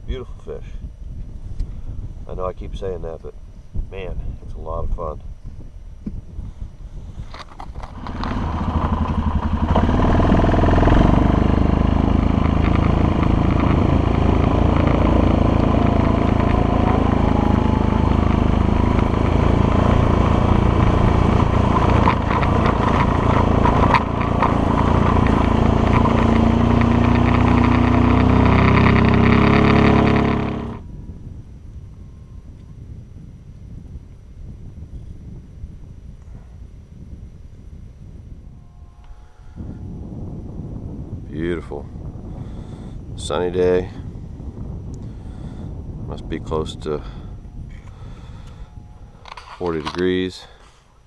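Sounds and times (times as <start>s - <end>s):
small gasoline engine running: 7.8s - 30.8s.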